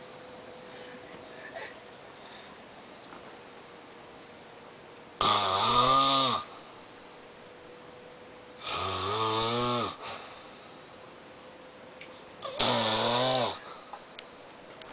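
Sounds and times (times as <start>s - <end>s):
rattling snores: 5.2s - 6.5s, 8.6s - 10.5s, 12.4s - 13.8s.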